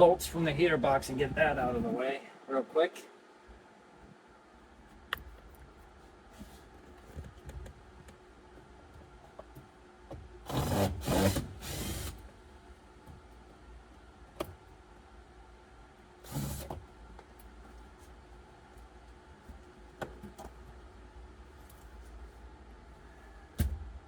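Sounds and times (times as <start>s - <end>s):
small power tool running: 10.5s - 12.2s.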